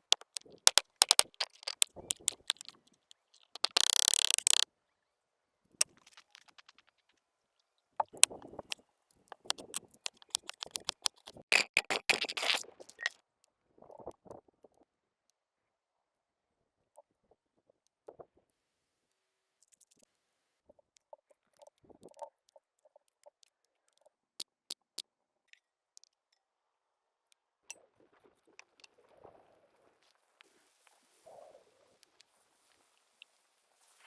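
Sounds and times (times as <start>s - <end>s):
food preparation clicks and scrapes: 0.1s - 4.6s, 5.8s - 6.7s, 9.3s - 13.2s.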